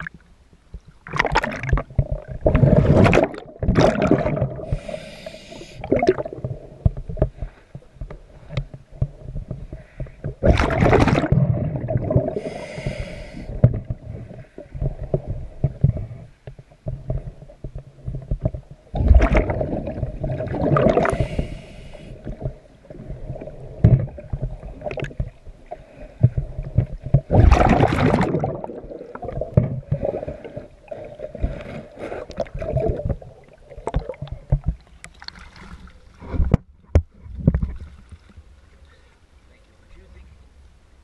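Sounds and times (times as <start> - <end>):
underwater bubbles gurgling: 0.0 - 38.1
knocks and scraping on hull: 6.3 - 12.3, 13.5 - 21.0, 22.3 - 28.3, 29.2 - 30.6, 31.2 - 38.5.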